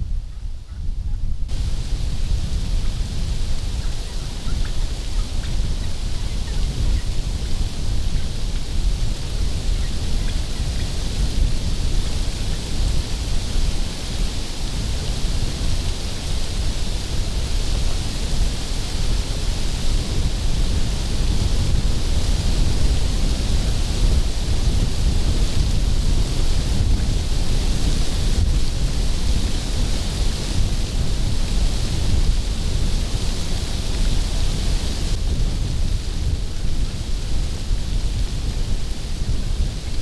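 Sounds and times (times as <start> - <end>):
wind noise on microphone: 0.0 - 40.0.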